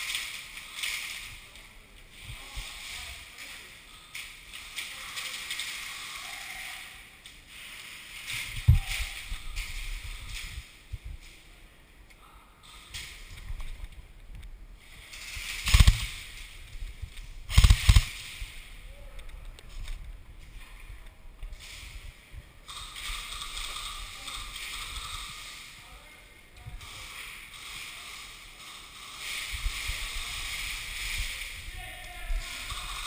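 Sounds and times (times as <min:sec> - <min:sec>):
rustling movement: 0:00.0 - 0:11.8, 0:12.7 - 0:33.0.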